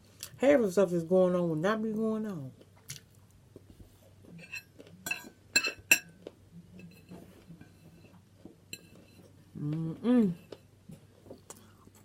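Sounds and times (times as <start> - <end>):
tableware clinking: 4.4 - 6.2, 8.7 - 9.2.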